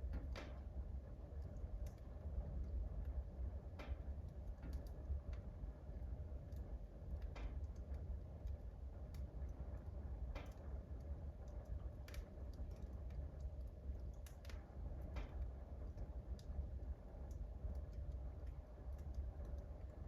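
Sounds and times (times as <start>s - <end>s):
low steady rumble: 0.0s - 20.0s
wood fire crackling and popping: 0.0s - 20.0s.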